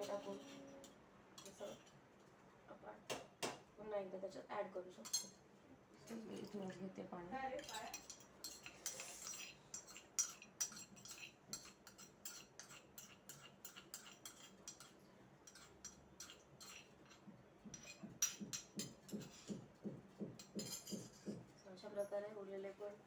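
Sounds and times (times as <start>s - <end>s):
spoon clinking and scraping: 0.0s - 1.9s, 7.6s - 19.6s, 20.4s - 21.4s.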